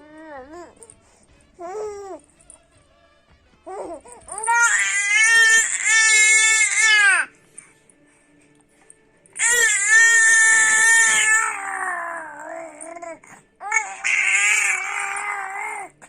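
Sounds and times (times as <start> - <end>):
baby squealing: 3.7 - 7.3, 9.4 - 15.9.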